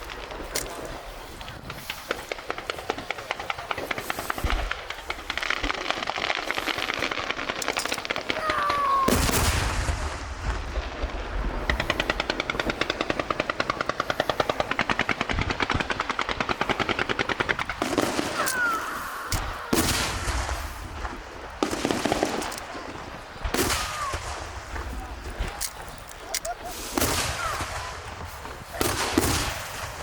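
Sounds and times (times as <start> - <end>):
fireworks popping: 0.0 - 30.0
heavy fireworks bangs: 0.0 - 30.0.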